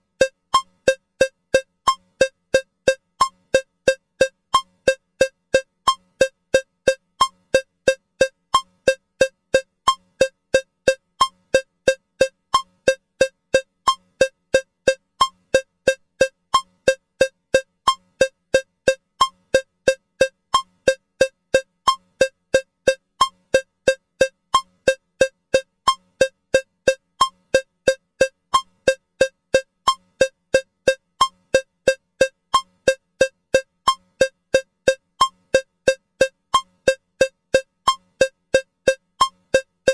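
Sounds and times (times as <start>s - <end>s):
cowbell metronome ticking: 0.1s - 39.9s.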